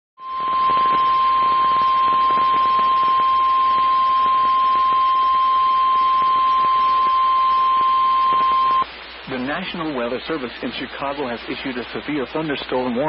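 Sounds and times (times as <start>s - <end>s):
steady high alarm tone: 0.2s - 8.8s
faint radio hiss: 0.2s - 13.0s.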